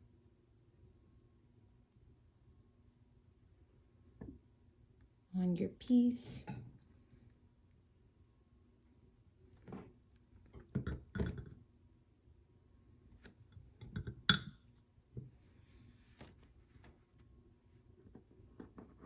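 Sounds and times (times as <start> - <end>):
soft handling taps and rustles: 15.1 - 17.3.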